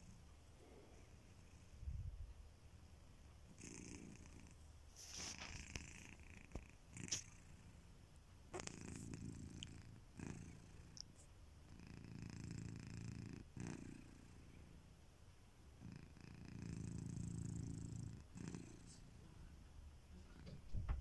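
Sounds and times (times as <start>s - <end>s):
cat snoring softly: 3.5s - 7.9s, 8.5s - 14.8s, 15.8s - 19.6s.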